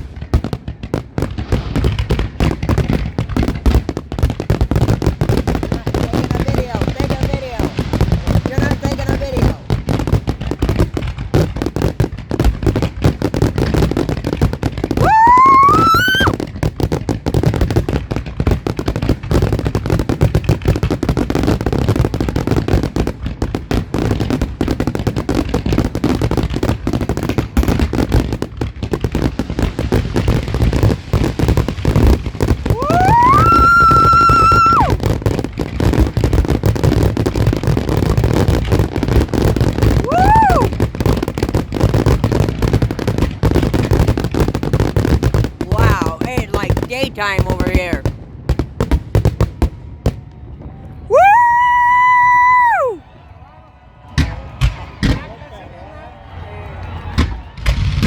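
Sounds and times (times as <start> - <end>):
fireworks crackling and banging: 0.0 - 58.0
firework whistles rising: 15.0 - 16.4, 32.7 - 35.0, 40.0 - 40.7.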